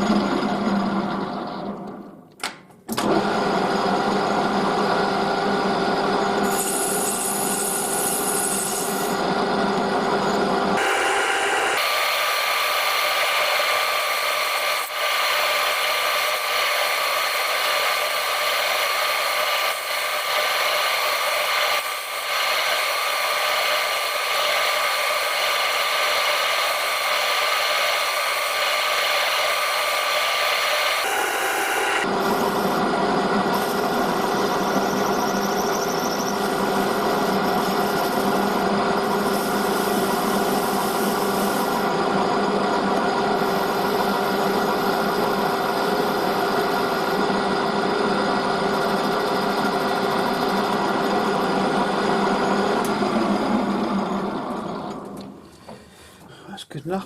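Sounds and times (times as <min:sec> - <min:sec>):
metal lathe whine: 0:00.0 - 0:02.1, 0:03.0 - 0:55.5
metal cutting and rubbing: 0:06.5 - 0:09.2.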